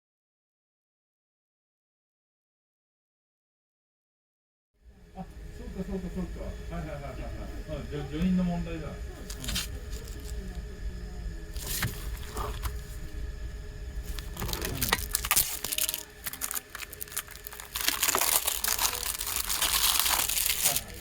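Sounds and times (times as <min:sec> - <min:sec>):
packaging crinkling: 0:09.2 - 0:10.4, 0:11.6 - 0:13.0, 0:14.0 - 0:21.0.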